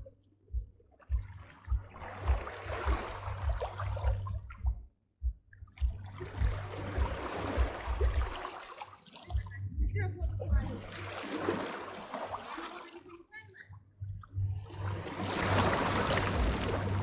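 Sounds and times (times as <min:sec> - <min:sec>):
small waves washing in: 0:01.6 - 0:04.2, 0:06.2 - 0:09.4, 0:10.7 - 0:13.2, 0:14.7 - 0:17.0
wind buffeting microphone: 0:14.1 - 0:17.0.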